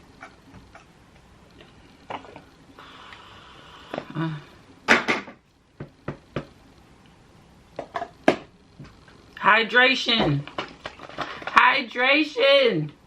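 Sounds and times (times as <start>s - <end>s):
faint hiss: 1.6s - 4.8s.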